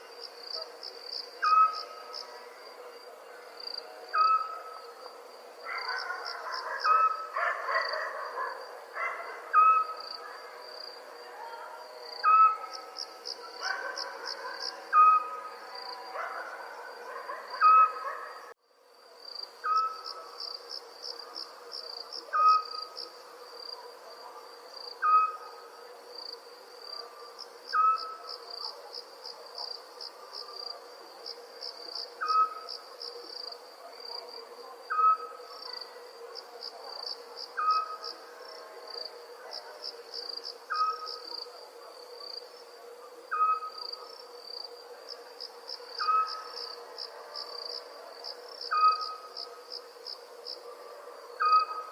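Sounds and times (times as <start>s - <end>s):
crickets chirping: 0.0s - 51.9s.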